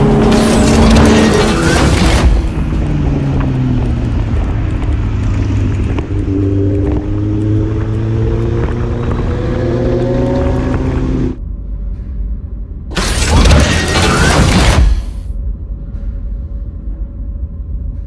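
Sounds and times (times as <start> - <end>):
motorcycle engine accelerating: 0.0 - 11.4.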